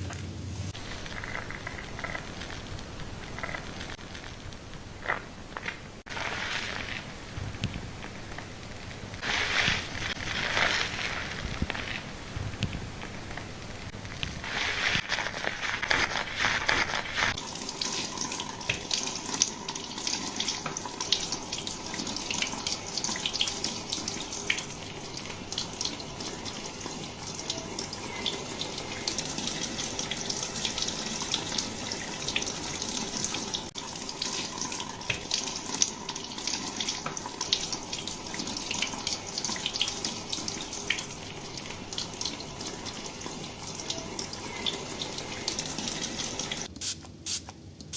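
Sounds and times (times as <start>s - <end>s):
wet hair and suds crackling: 0.7s - 18.3s
water rushing rinsing hair: 0.7s - 27.6s, 28.6s - 46.7s.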